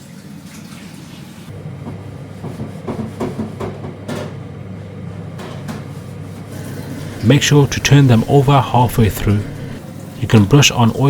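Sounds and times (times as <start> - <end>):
air fryer fan humming: 6.5 - 11.0.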